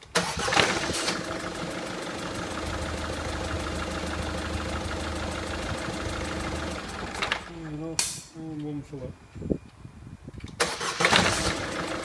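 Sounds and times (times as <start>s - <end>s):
starter motor cranking: 0.1s - 1.6s
diesel engine idling: 0.2s - 7.7s.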